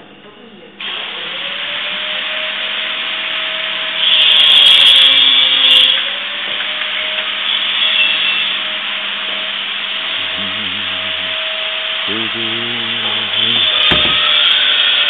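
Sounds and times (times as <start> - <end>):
electric power tool running: 0.8 - 15.0.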